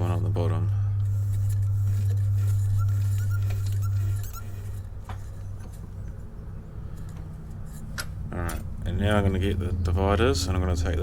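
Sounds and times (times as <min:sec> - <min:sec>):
wood lathe humming: 0:00.9 - 0:06.1.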